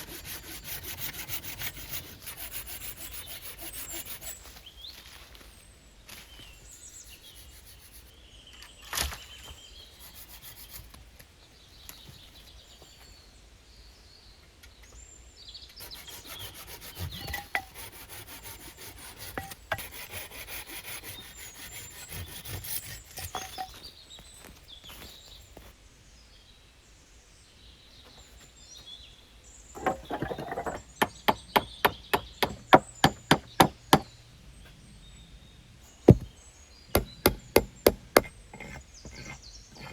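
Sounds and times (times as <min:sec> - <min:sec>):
scraping and rasping on wood: 0:00.0 - 0:04.7, 0:06.7 - 0:08.1, 0:09.8 - 0:11.0, 0:15.8 - 0:23.9, 0:29.8 - 0:34.1, 0:36.1 - 0:36.3, 0:36.9 - 0:39.9.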